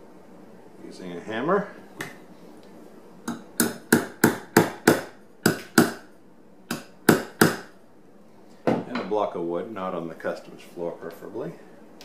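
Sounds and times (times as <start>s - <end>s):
hammer tapping: 3.3s - 6.0s, 6.7s - 7.7s.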